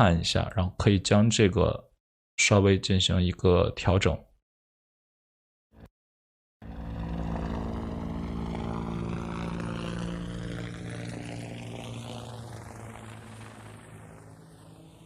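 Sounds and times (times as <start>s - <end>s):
helicopter rotor and engine drone: 6.6s - 15.0s.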